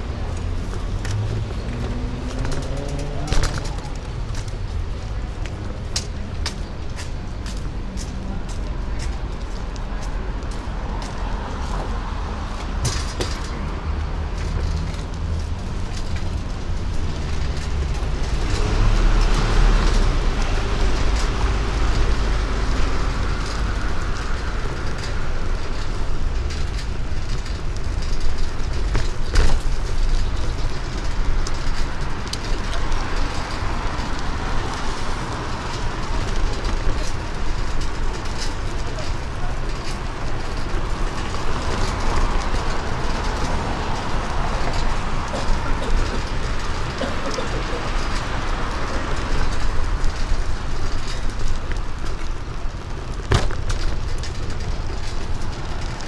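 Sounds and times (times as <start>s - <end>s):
road traffic rumble: 0.0s - 56.0s.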